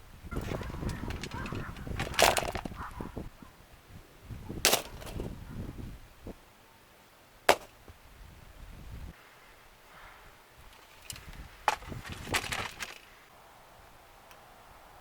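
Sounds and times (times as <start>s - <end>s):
plastic cracking and rattling: 0.6s - 2.8s, 11.1s - 13.1s
plastic fan being smashed: 1.1s - 2.8s, 4.6s - 5.3s, 7.5s - 7.7s, 11.7s - 13.0s.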